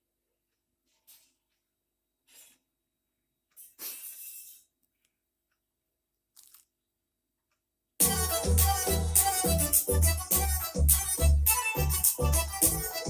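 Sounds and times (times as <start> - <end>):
song with heavy bass on speaker: 8.0 - 13.0.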